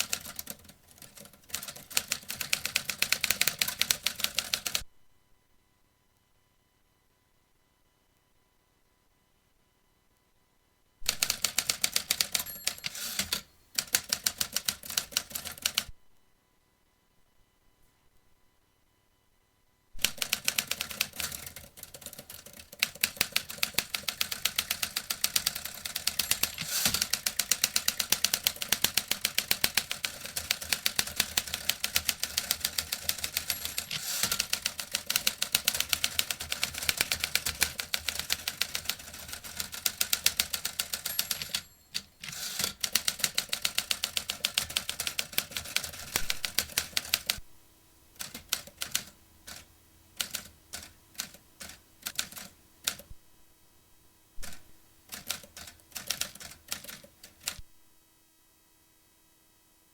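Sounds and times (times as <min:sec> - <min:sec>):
typewriter key strikes: 0:11.1 - 0:15.8, 0:22.8 - 0:47.2.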